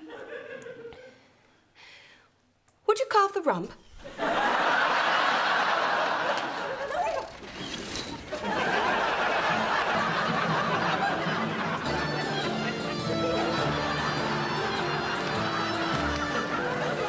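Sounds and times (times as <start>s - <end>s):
audience laughing: 4.1s - 17.0s
music: 9.4s - 17.0s.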